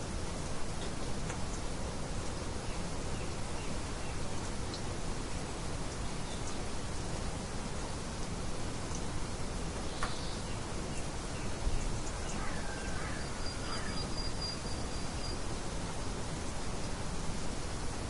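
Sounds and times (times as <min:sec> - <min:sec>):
light wind hissing: 0:00.0 - 0:18.0
birds chirping: 0:11.4 - 0:15.4.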